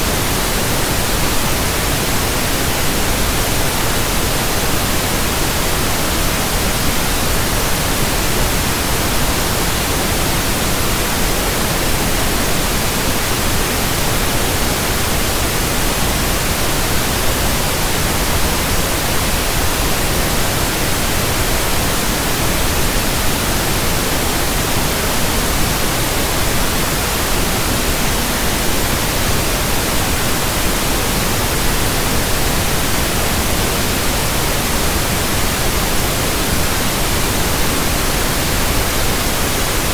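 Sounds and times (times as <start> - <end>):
pink noise hiss: 0.0 - 39.9.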